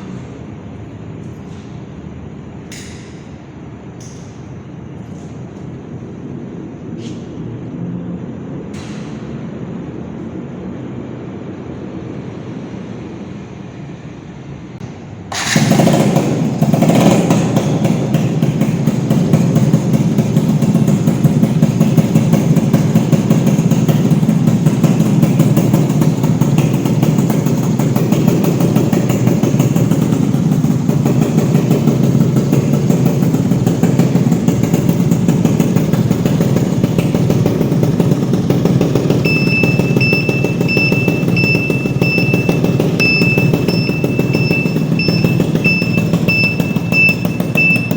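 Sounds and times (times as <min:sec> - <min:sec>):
two-stroke motorcycle engine running: 0:15.3 - 0:47.9.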